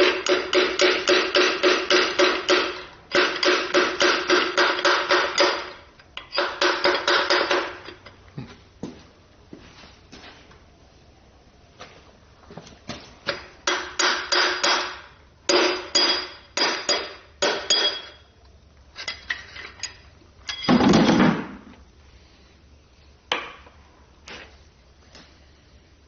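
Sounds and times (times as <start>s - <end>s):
hammer tapping on metal: 0.0s - 7.9s, 13.6s - 18.2s.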